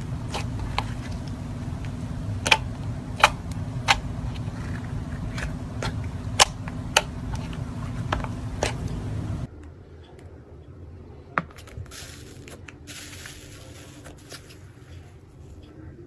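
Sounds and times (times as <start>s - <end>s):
low hum: 0.0s - 16.0s
soft hiss: 11.6s - 15.7s.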